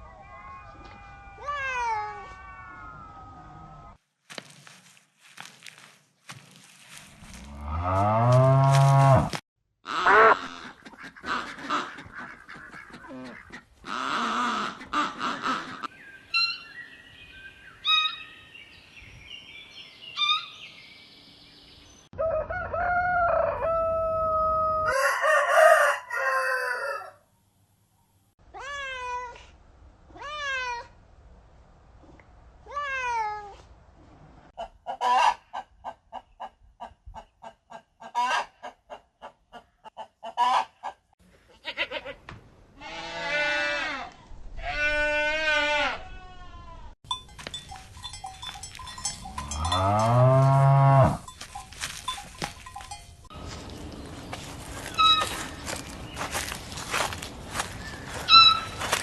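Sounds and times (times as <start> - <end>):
hens clucking: 10.0 - 15.9
rooster crowing: 22.2 - 27.2.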